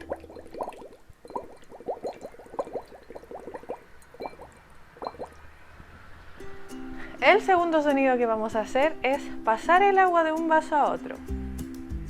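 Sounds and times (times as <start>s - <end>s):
bubbling gurgles through a straw: 0.0s - 5.4s.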